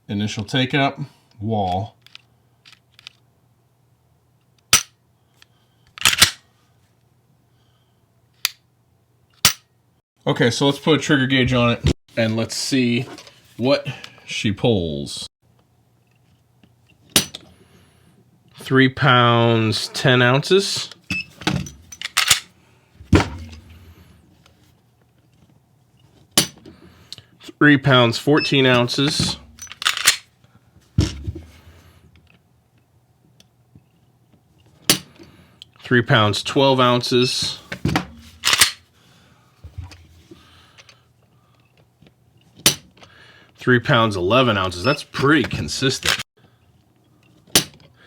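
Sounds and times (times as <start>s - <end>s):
pistol slide clacking: 6.0s - 6.4s, 22.0s - 22.5s, 29.5s - 30.2s, 38.4s - 38.8s.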